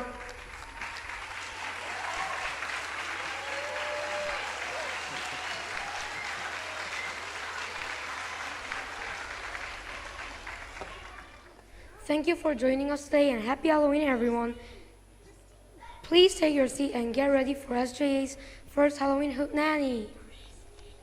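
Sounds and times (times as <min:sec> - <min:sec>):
audience applauding: 0:00.0 - 0:11.6.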